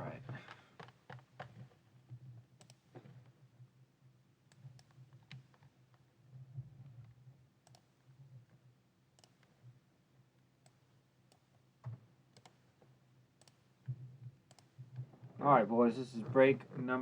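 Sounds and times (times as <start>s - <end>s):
faint low hum: 1.6s - 17.0s
soft clicks: 2.6s - 3.3s, 7.6s - 7.9s, 9.2s - 9.6s, 10.6s - 15.0s.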